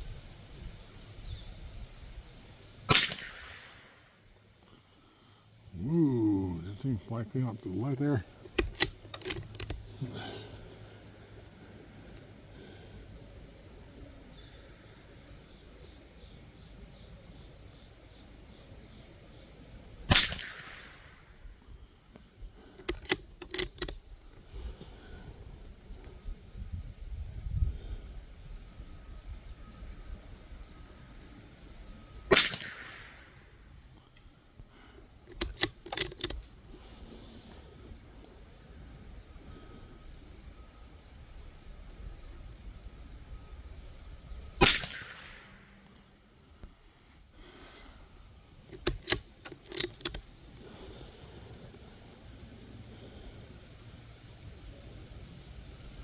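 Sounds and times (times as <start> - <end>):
rifle shots: 2.9 - 4.0, 8.4 - 9.8, 20.1 - 21.1, 32.3 - 33.3, 35.3 - 36.5, 44.6 - 45.6
quiet clicks and knocks: 7.2 - 10.2, 22.8 - 24.0, 35.3 - 36.6, 48.7 - 50.6.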